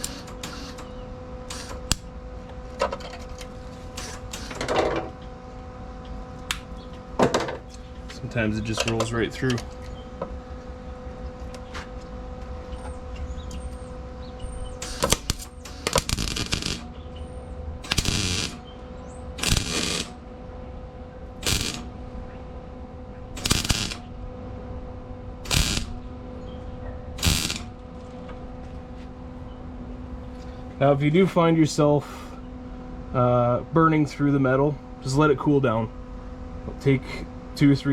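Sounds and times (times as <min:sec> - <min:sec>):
welder arc crackling: 0:00.0 - 0:05.3, 0:06.3 - 0:26.4, 0:27.2 - 0:28.6
steady hum: 0:00.0 - 0:37.9.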